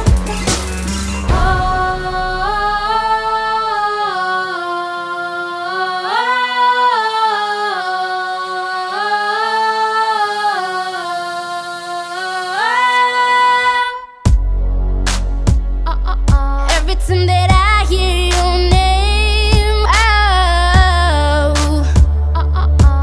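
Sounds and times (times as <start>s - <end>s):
sustained synth chords: 0.0s - 4.5s.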